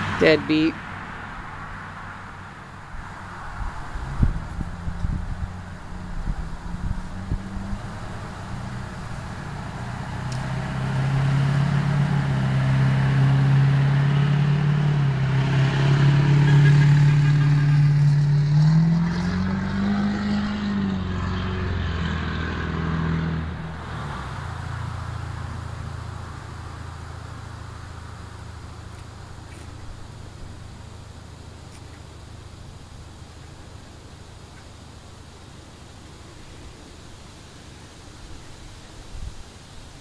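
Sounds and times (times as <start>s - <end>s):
vehicle driving past: 0.0s - 31.2s.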